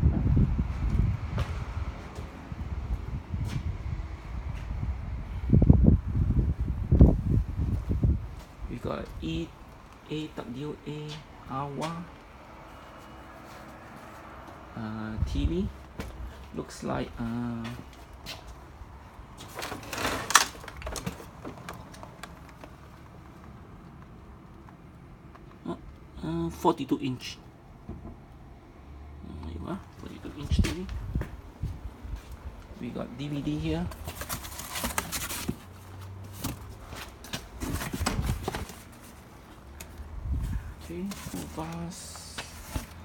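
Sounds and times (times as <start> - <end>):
rustling and scraping: 19.4 - 23.6, 33.4 - 43.0.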